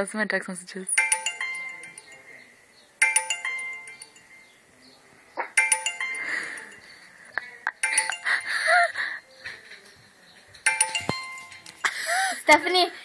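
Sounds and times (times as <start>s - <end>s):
text message alert tone: 0.9s - 2.3s, 3.0s - 4.5s, 5.6s - 6.9s, 10.7s - 11.8s.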